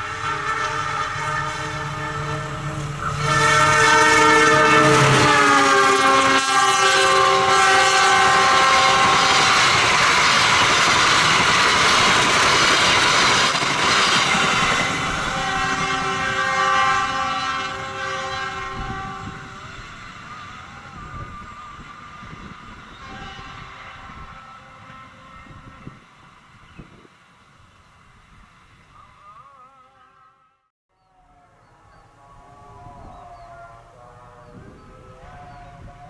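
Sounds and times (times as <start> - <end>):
train horn: 0.0 - 27.0, 28.9 - 36.0
train wheels clattering on rails: 8.2 - 16.4.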